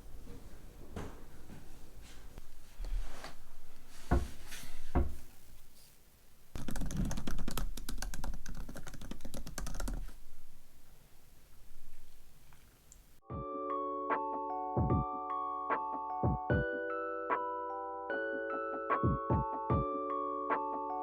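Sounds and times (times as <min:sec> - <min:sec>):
typing on computer keyboard: 0:06.6 - 0:10.1.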